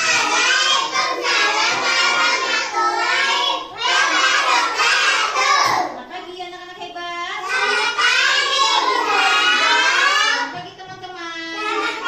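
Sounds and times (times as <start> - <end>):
children singing in chorus: 0.0 - 6.0, 7.4 - 10.6, 11.5 - 12.0.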